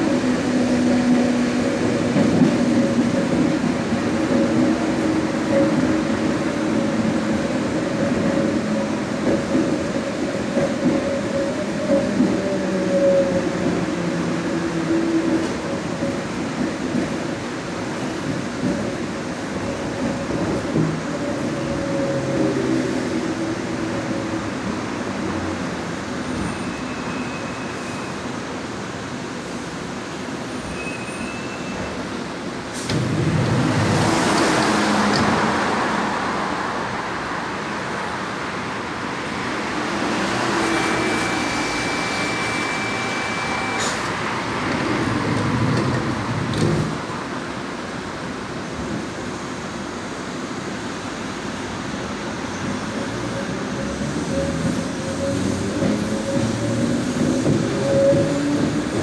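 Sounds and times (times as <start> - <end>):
rumbling train ride noise: 0.0 - 59.0
train motor tones: 39.6 - 47.0.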